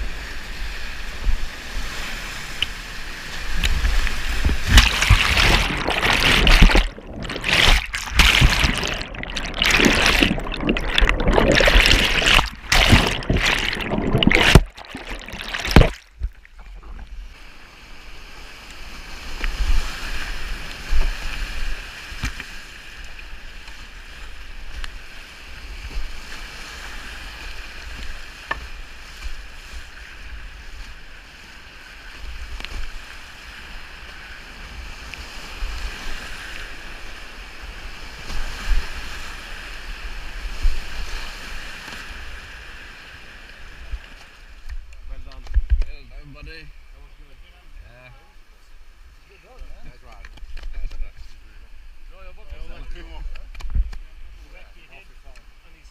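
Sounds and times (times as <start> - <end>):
whitewater rushing and splashing: 1.9 - 17.6.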